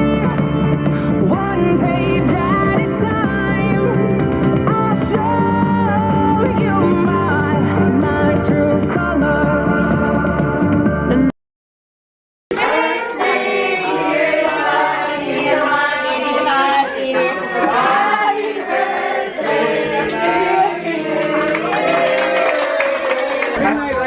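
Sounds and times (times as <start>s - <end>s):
group of voices singing: 0.0s - 10.8s, 12.5s - 24.0s
music: 0.0s - 11.3s.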